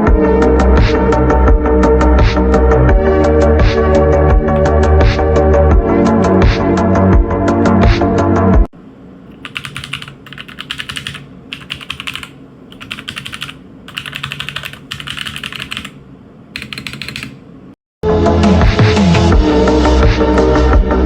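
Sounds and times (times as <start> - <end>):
loud electronic music: 0.1 - 8.3, 18.3 - 21.0
mechanical keyboard typing: 9.4 - 16.0, 16.6 - 17.4.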